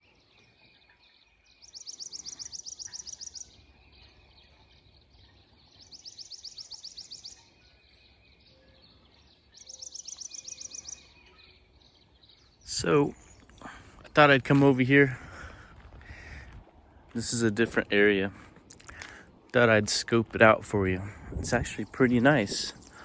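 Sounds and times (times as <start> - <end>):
faint outdoor background noise: 0.0 - 23.0
songbird trilling: 1.4 - 13.6, 21.5 - 23.0.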